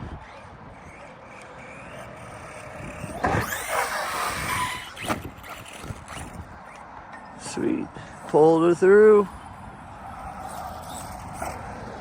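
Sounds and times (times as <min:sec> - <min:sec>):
electric motor whining: 0:00.0 - 0:06.8.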